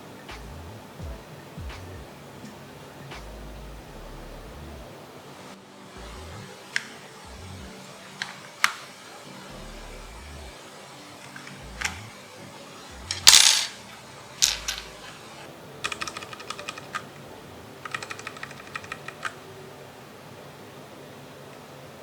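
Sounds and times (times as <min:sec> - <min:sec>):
keyboard clattering: 0:11.2 - 0:12.1, 0:13.0 - 0:19.5.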